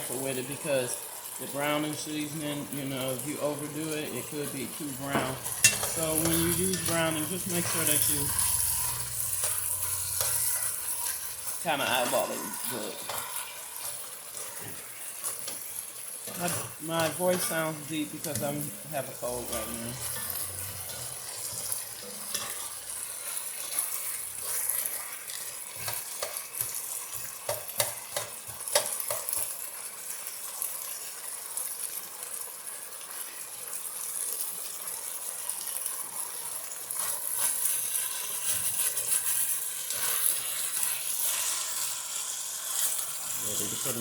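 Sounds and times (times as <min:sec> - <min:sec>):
meat sizzling in a pot: 0:00.0 - 0:44.0
utensil scraping a pot: 0:04.1 - 0:26.7, 0:37.0 - 0:44.0.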